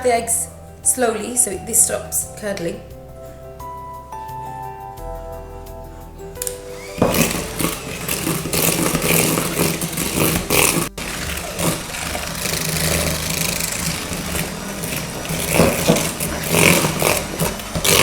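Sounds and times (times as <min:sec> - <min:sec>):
electric mixer motor humming: 0:06.4 - 0:18.0
beaters clattering in bowl: 0:07.0 - 0:18.0.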